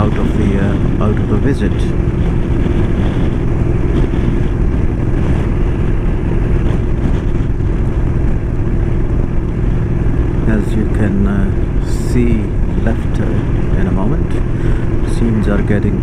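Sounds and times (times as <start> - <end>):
motorcycle engine drone: 0.0 - 16.0
wind and road noise: 0.0 - 16.0.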